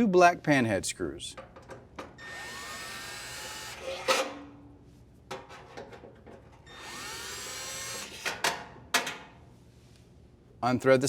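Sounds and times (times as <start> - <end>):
drill motor whine: 2.2 - 4.1, 6.7 - 8.2.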